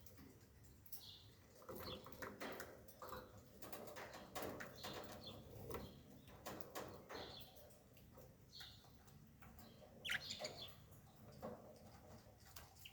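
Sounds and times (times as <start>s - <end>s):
faint bird chirps: 10.0s - 10.8s.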